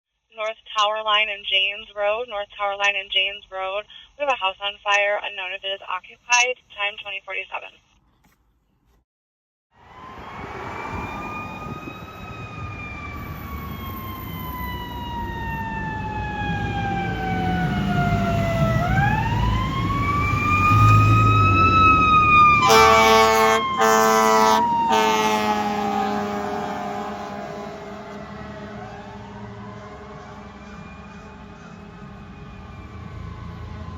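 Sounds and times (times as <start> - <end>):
fire engine siren wailing: 9.8 - 33.9
truck engine rumble: 9.9 - 33.9
air horn blasts: 22.6 - 28.3.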